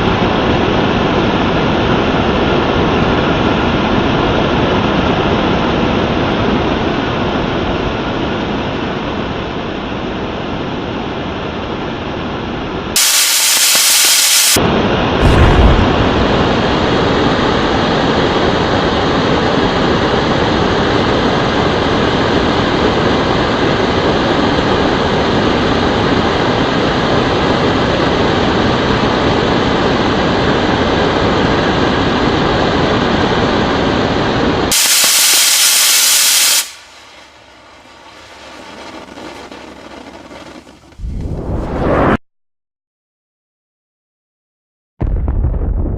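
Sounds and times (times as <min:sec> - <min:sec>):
faint hiss: 0:13.0 - 0:14.6, 0:34.7 - 0:38.3
rocket engine roaring: 0:13.0 - 0:42.2.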